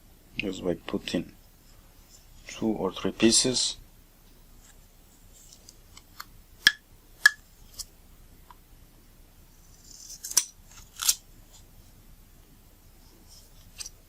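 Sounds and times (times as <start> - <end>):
tape being cut: 9.8 - 11.2.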